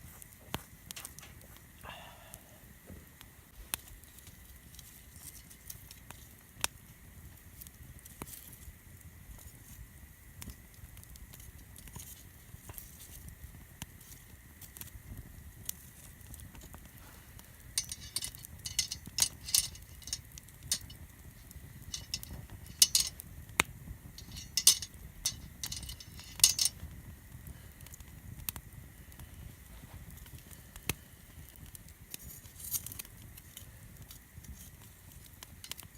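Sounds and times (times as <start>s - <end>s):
campfire crackling: 0.0s - 35.9s
low steady rumble: 15.0s - 35.9s.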